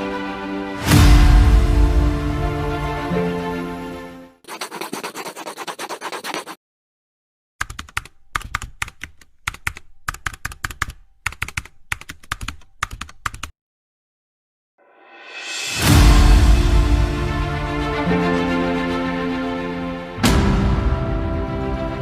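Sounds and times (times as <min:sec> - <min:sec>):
computer keyboard typing: 0:07.6 - 0:13.5.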